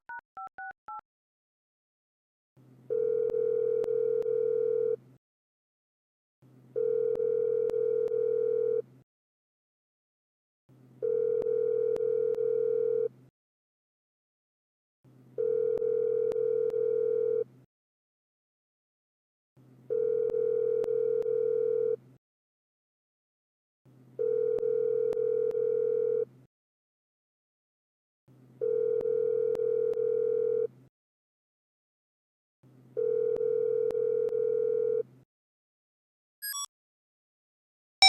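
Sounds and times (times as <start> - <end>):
telephone line tone: 2.9 - 5.0, 6.8 - 8.8, 11.0 - 13.1, 15.4 - 17.4, 19.9 - 22.0, 24.2 - 26.2, 28.6 - 30.7, 33.0 - 35.0.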